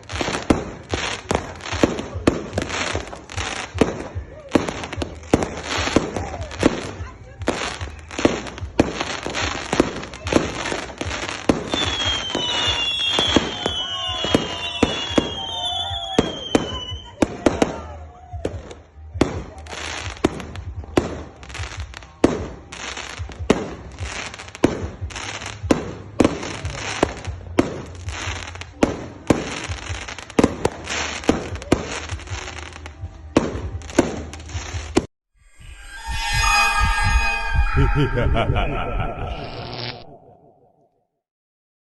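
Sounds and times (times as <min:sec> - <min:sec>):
fireworks bangs: 0:00.0 - 0:35.1
high whistling fireworks: 0:00.0 - 0:38.4.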